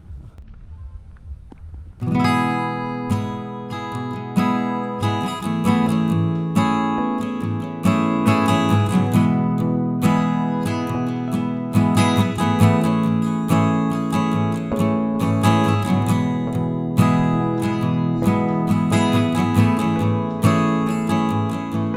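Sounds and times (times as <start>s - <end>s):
low engine rumble: 0.0s - 2.1s, 9.6s - 21.9s
strummed acoustic guitar music: 2.0s - 21.9s.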